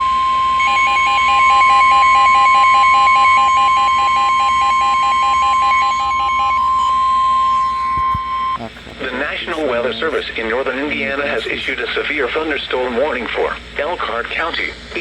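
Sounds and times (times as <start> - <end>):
electronic alarm beeping rapidly: 0.0 - 8.6
steady high warning tone: 0.0 - 15.0.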